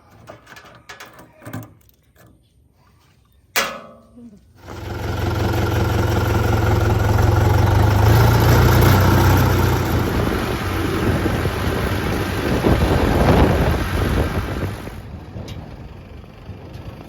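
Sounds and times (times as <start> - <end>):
diesel engine running: 4.6 - 17.0.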